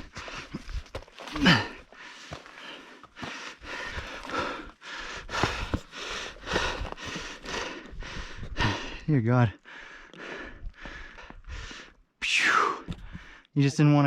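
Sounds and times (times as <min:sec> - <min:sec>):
person breathing hard: 0:00.0 - 0:12.0.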